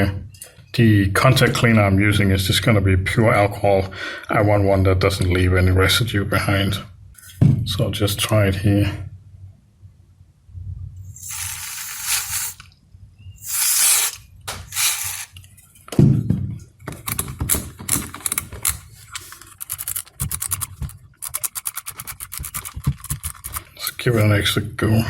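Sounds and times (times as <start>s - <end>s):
spray can hissing: 11.2s - 12.7s, 13.4s - 15.4s
dial clicking: 19.4s - 23.7s.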